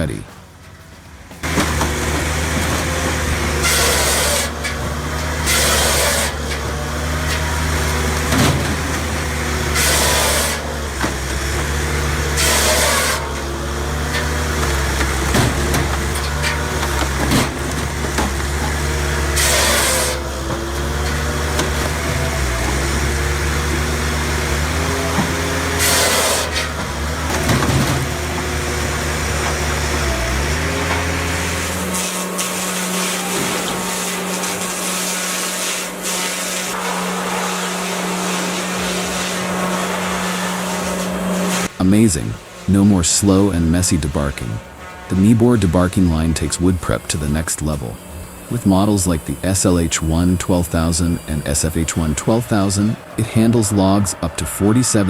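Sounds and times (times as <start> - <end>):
engine running steadily: 0.0 - 55.0
short bursts of hissing: 19.2 - 20.3.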